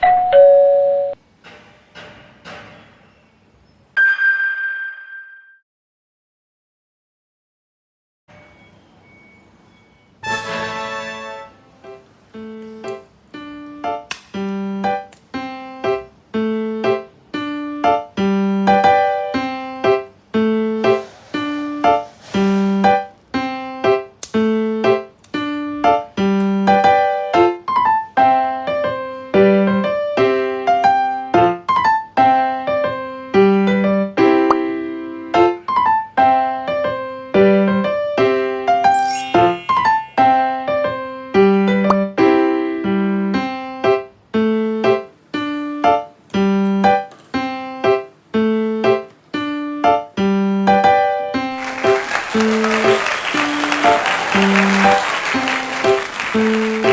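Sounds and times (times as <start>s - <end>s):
bouncy piano tune: 10.2s - 56.9s.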